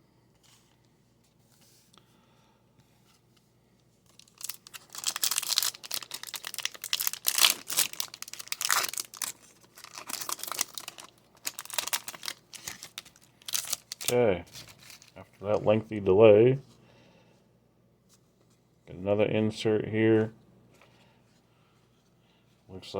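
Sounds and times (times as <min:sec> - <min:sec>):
plastic crinkling: 0:04.1 - 0:15.2.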